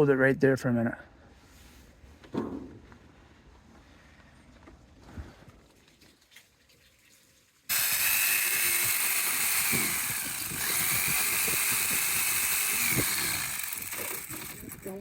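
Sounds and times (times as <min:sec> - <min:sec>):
jigsaw cutting metal roof: 0:07.7 - 0:15.0.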